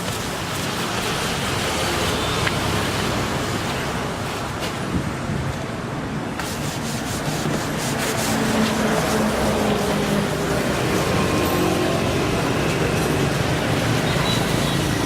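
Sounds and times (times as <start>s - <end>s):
cloth scrubbing a surface: 6.4s - 12.2s.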